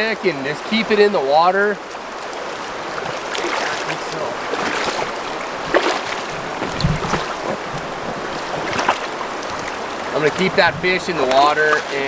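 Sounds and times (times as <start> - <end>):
river current rushing: 0.0 - 12.0.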